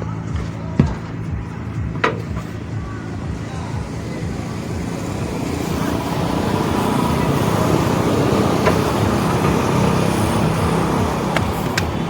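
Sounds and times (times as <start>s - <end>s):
motor vehicle engine running: 0.0s - 12.0s.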